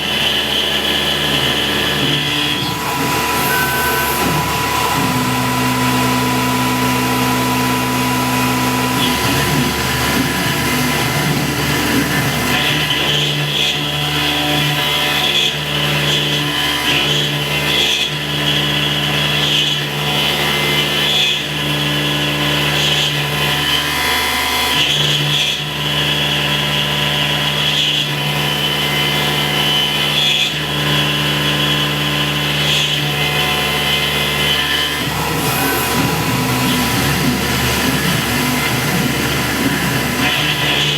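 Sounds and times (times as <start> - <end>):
high whine: 0.0 - 13.5, 34.0 - 40.9
mill cutting metal hum: 0.0 - 40.9.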